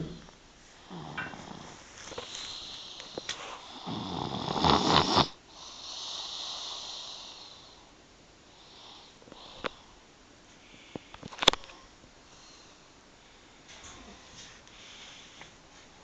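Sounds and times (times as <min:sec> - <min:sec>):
person snoring: 0:03.7 - 0:07.6.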